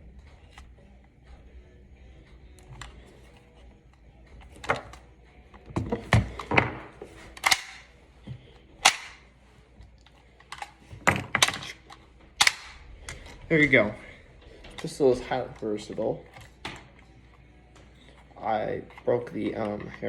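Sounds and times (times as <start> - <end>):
toy pistol clicking and clacking: 7.4 - 7.9, 8.8 - 9.2, 11.4 - 12.8.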